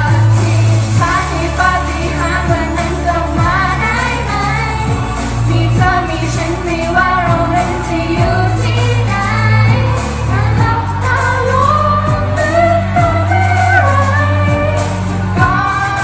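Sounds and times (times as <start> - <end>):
person singing a wavering melody: 0.0 - 16.0
pop band backing: 0.0 - 16.0.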